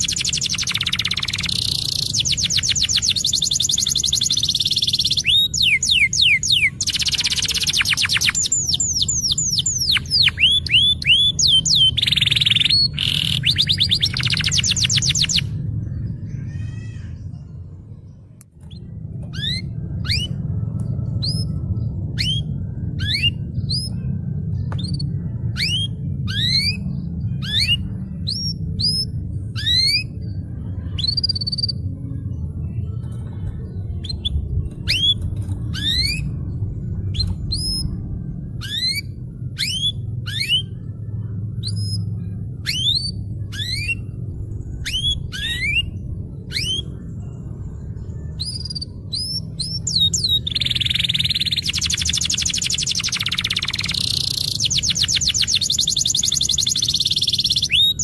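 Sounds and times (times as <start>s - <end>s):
canary singing rising whistles: 0.0s - 15.5s, 22.1s - 23.9s, 38.6s - 40.8s, 41.7s - 44.2s, 44.8s - 46.9s, 48.4s - 58.0s
steady low hum: 0.0s - 58.0s.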